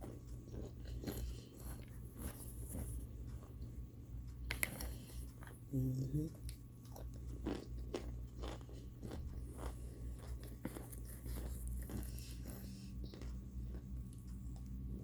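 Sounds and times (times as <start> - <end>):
crunchy bites and chewing: 6.5 - 14.3.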